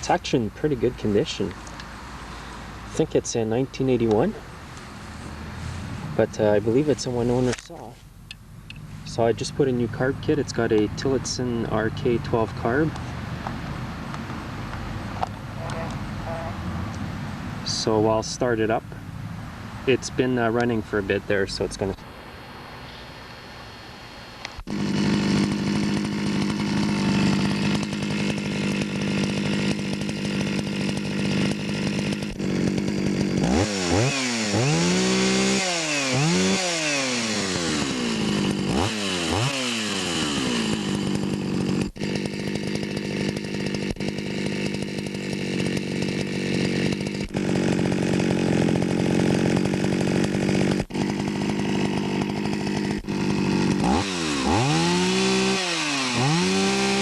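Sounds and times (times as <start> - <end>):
chainsaw idling and revving: 0.0 - 7.6, 9.0 - 13.3, 14.8 - 19.1, 19.8 - 57.0.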